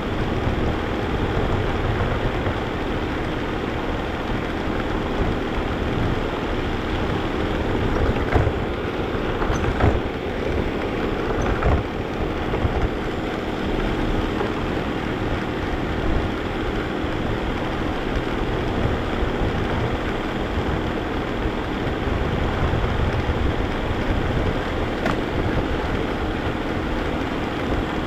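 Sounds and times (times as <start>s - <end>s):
vacuum cleaner running: 0.0s - 28.0s
vacuum knocks and bumps: 7.0s - 13.1s, 22.6s - 26.6s.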